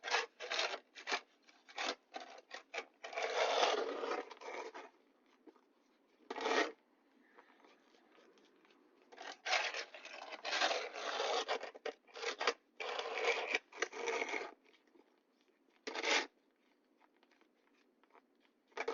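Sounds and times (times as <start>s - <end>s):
snow shovel scraping pavement: 0.0s - 4.9s, 6.3s - 6.8s, 9.2s - 14.5s.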